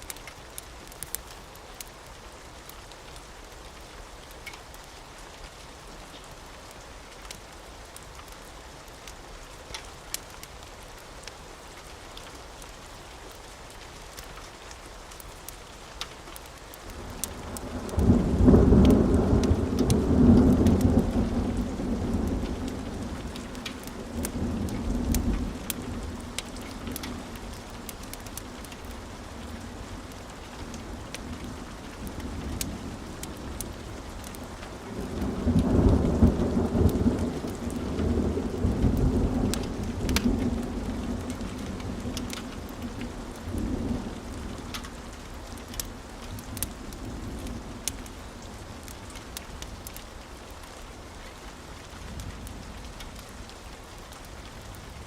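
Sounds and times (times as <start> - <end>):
steady rain: 0.0 - 55.0
wood fire crackling: 0.0 - 55.0
thunder rumbling: 17.0 - 48.0.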